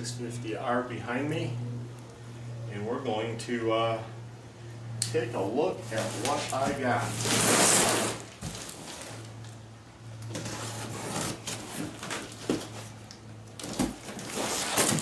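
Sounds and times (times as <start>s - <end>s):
steady electrical hum: 0.0s - 15.0s
packages rustling: 5.8s - 9.5s, 10.3s - 15.0s.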